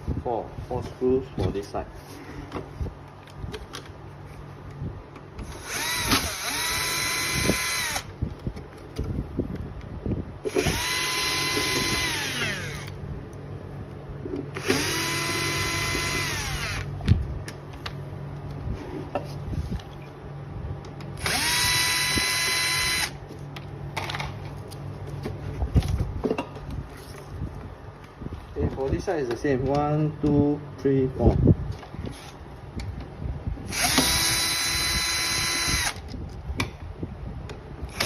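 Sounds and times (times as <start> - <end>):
power screwdriver whining: 5.4 - 8.1, 10.4 - 13.0, 14.5 - 16.9, 21.2 - 23.2, 33.7 - 36.1.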